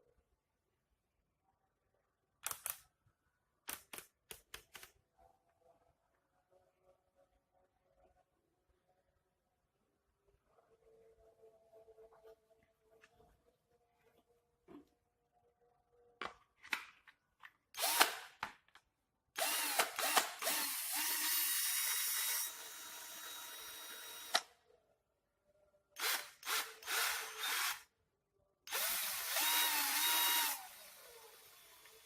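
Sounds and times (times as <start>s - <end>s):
cordless drill motor whine: 17.8s - 18.1s, 19.4s - 24.4s, 26.0s - 27.8s, 28.7s - 32.0s.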